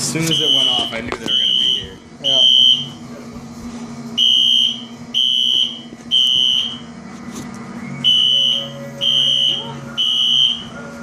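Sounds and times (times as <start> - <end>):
fire alarm beeping: 0.2 - 3.0, 4.2 - 7.0, 7.8 - 11.0.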